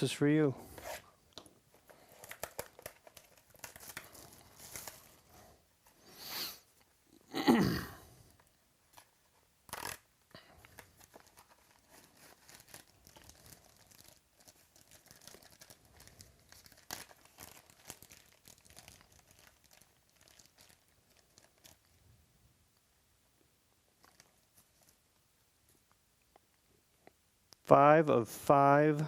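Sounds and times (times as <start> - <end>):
card pack wrapper crinkling: 1.8 - 5.4, 8.9 - 22.0, 23.9 - 25.0.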